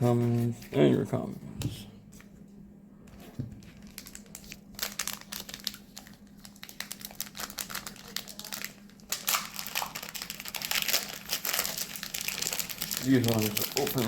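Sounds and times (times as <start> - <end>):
foil wrapper crinkling: 3.6 - 14.0.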